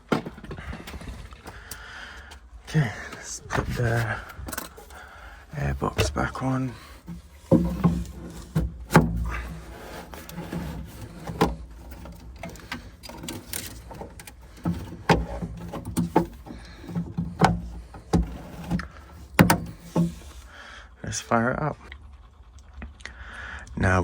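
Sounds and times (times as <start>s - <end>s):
cover knocking and scraping: 0.0s - 1.6s, 2.9s - 20.5s.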